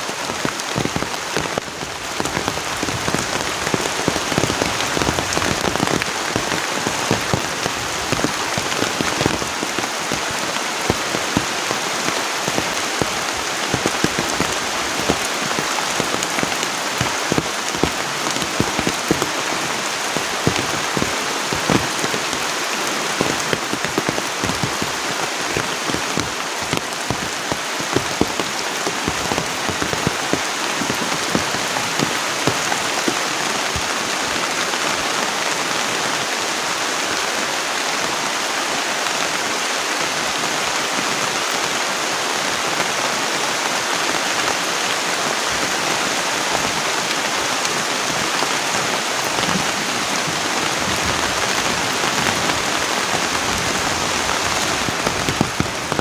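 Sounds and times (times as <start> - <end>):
sharp raindrop hits: 0.0 - 35.6
heavy rain: 0.0 - 56.0.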